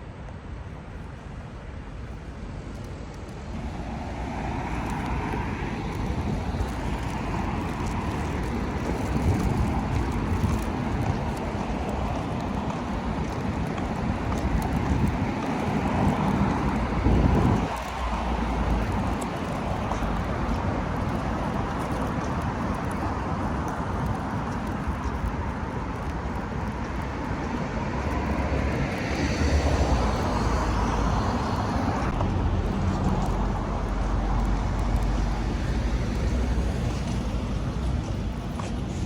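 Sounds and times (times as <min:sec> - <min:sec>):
road traffic noise: 0:00.0 - 0:39.0
vehicle passing: 0:27.5 - 0:39.0.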